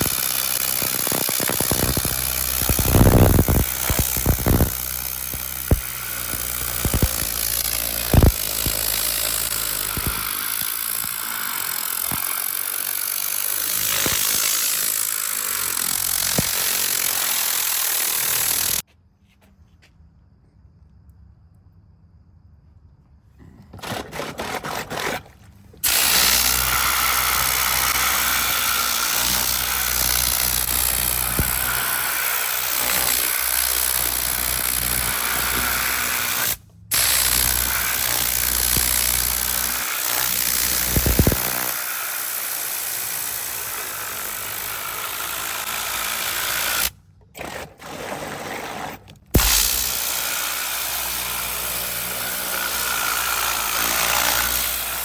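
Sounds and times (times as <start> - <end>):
motor-driven machine hissing and humming: 0.0 - 12.6, 49.4 - 51.2.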